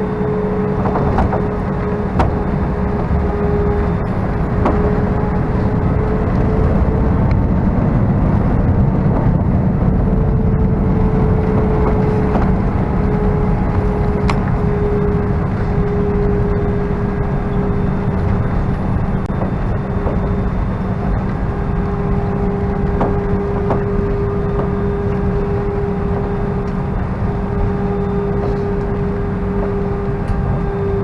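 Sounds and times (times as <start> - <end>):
jet engines rumbling: 0.0 - 31.0
rushing air: 0.0 - 31.0
steady hum: 0.0 - 31.0.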